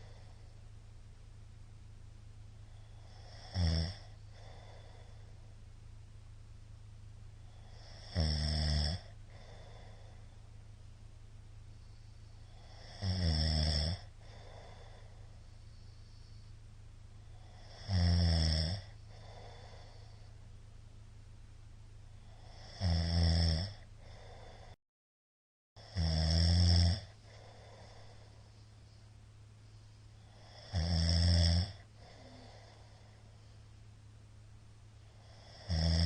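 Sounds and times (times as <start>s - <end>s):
faint breathing: 0.0s - 0.8s, 2.5s - 5.7s, 7.4s - 8.2s, 9.0s - 10.7s, 11.5s - 13.1s, 13.9s - 17.9s, 18.7s - 20.6s, 23.7s - 24.8s, 27.1s - 30.8s, 31.7s - 34.0s
man snoring heavily: 2.8s - 5.3s, 7.5s - 10.2s, 12.4s - 15.2s, 17.3s - 20.3s, 22.3s - 24.8s, 25.8s - 28.4s, 30.2s - 33.2s, 35.2s - 36.0s.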